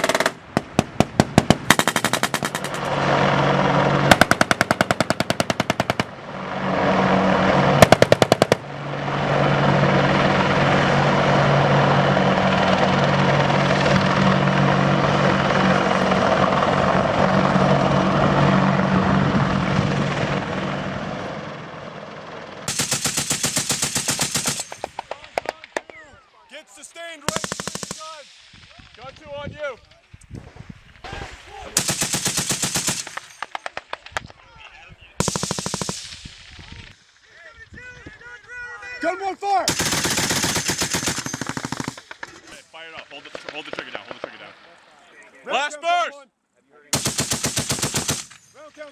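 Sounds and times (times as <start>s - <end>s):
machine-gun fire bursts: 0.0s - 2.9s, 4.0s - 6.2s, 7.8s - 8.7s, 22.7s - 25.9s, 27.3s - 28.4s, 31.8s - 34.1s, 35.2s - 36.3s, 39.7s - 42.3s, 46.9s - 48.5s
engine drone: 0.0s - 25.0s.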